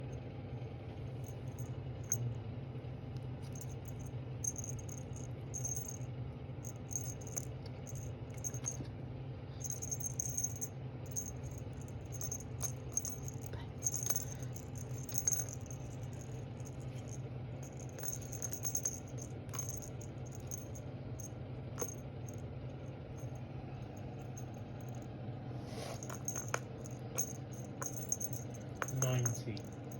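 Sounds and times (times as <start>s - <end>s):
steady low hum: 0.0s - 29.9s
small bell jingling: 3.4s - 6.0s, 6.6s - 8.9s, 9.6s - 22.4s, 26.0s - 29.9s.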